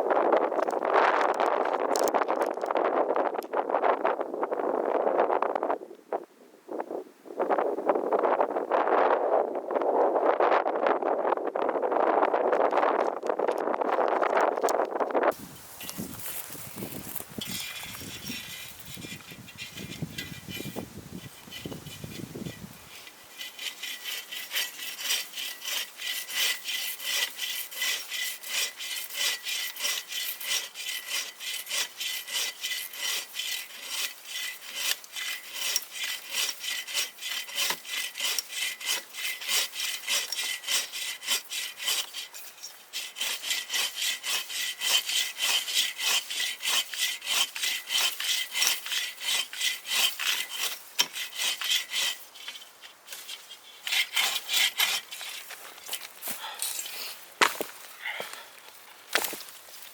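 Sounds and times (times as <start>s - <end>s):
hand saw cutting wood: 15.3s - 58.4s, 59.1s - 59.9s.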